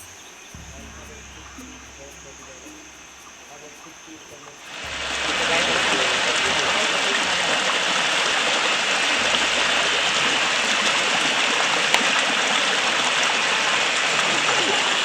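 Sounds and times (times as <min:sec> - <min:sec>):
running water rushing: 0:00.0 - 0:15.0.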